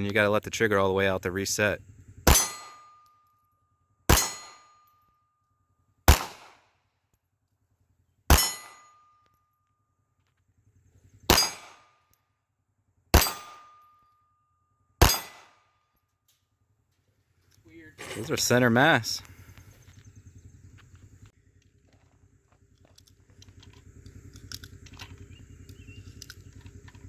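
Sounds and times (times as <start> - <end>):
metallic ring of steel target: 1.9 - 6.7, 8.3 - 9.9, 11.0 - 12.2, 13.1 - 15.9
pistol shots: 2.2 - 3.1, 4.1 - 4.9, 6.0 - 6.8, 8.3 - 9.1, 11.3 - 12.0, 13.1 - 13.9, 15.0 - 15.7.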